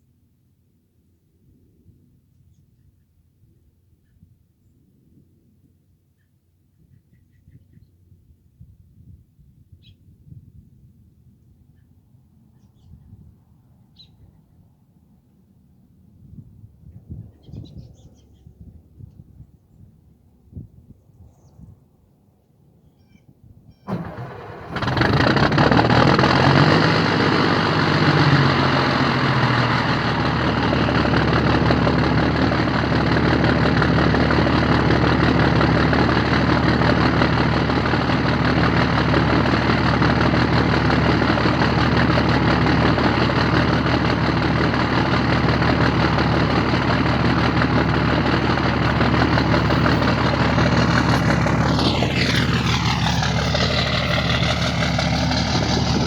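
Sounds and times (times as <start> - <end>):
diesel engine cranking and starting: 23.9 - 56.0
loud diesel engine idling: 23.9 - 56.0.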